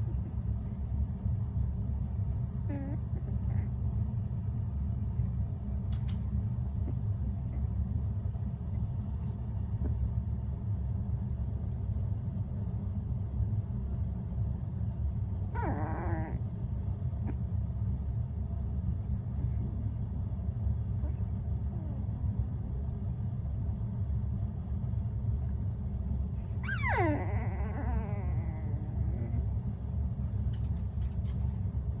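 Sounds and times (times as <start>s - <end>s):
steady low rumble: 0.0s - 32.0s
puppy whimpering: 2.6s - 3.8s, 15.6s - 16.6s, 26.6s - 29.6s.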